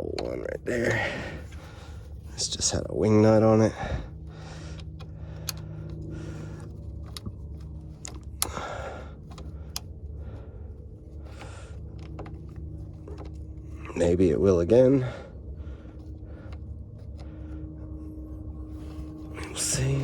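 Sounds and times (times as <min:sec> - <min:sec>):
steady low hum: 0:00.0 - 0:20.0
metal clicks of cable fastening: 0:04.6 - 0:09.9, 0:11.2 - 0:13.6.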